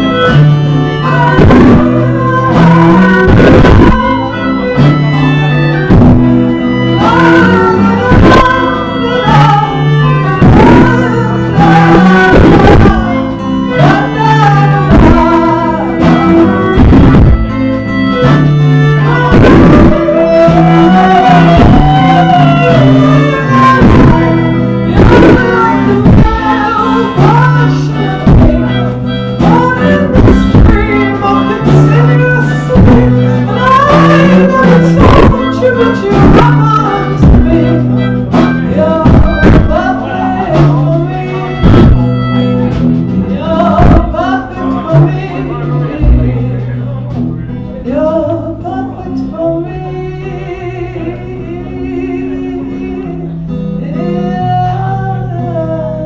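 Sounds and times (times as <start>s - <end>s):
wavering sliding lead melody: 0.0s - 55.8s
bass line: 0.0s - 56.0s
guitar: 0.0s - 56.0s
drum hits: 5.8s - 7.2s, 16.0s - 17.6s, 23.6s - 24.3s, 24.9s - 26.6s, 29.4s - 31.1s, 32.7s - 37.6s, 38.3s - 39.9s, 41.6s - 44.4s, 46.0s - 46.6s.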